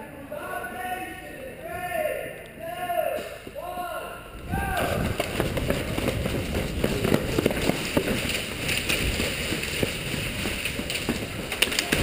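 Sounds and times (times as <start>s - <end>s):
footsteps and gear rattle: 5.0s - 12.0s.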